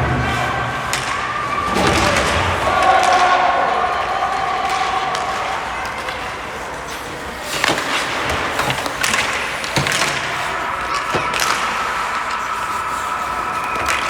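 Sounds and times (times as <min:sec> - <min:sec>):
skates scraping ice: 0:00.0 - 0:14.0
hockey sticks clacking on puck: 0:00.3 - 0:14.0
rink noise: 0:04.9 - 0:14.0.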